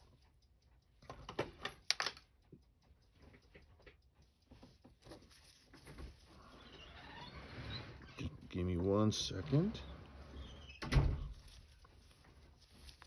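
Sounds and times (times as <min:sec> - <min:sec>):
metal tools clicking on watch parts: 0:00.0 - 0:05.9.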